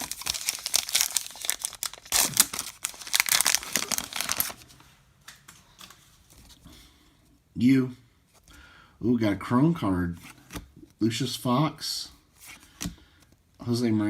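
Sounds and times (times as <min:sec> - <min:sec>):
card pack wrapper crinkling: 0:00.0 - 0:04.7.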